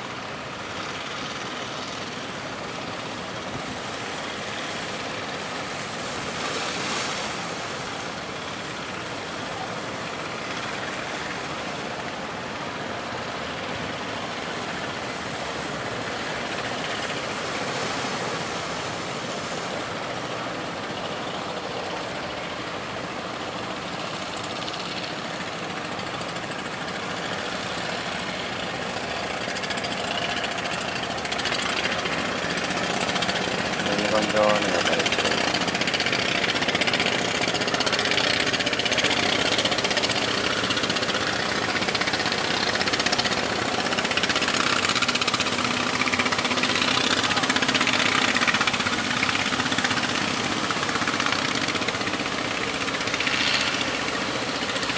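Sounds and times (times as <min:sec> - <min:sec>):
boat engines running: 0:00.0 - 0:54.9
surf: 0:00.0 - 0:54.9
wind: 0:00.0 - 0:54.9.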